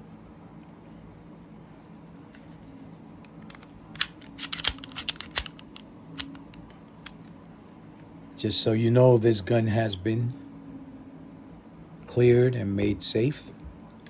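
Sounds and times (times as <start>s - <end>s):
faint room hum: 0.0s - 14.0s
pistol clicks and clacks: 3.5s - 7.2s.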